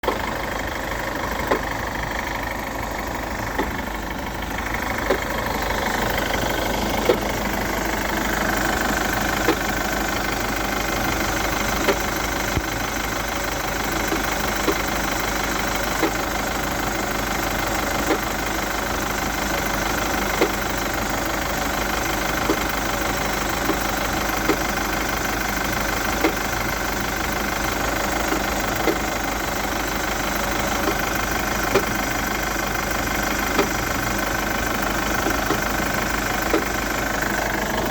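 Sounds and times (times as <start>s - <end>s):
diesel engine idling: 0.0s - 37.9s
sharp engine knock: 1.4s - 1.8s, 3.5s - 3.9s, 4.7s - 16.8s, 19.9s - 26.7s, 30.7s - 32.2s, 33.2s - 34.2s, 34.8s - 37.9s.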